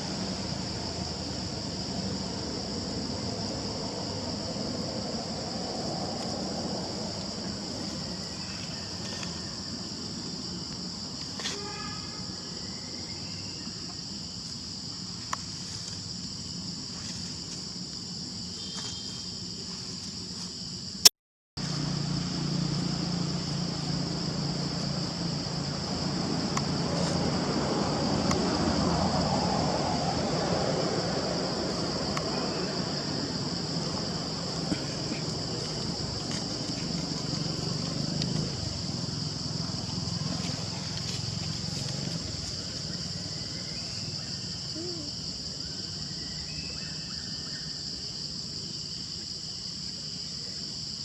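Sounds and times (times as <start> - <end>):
high-pitched insect chorus: 0.0 - 21.0, 21.6 - 51.0
low outdoor rumble: 21.6 - 44.4.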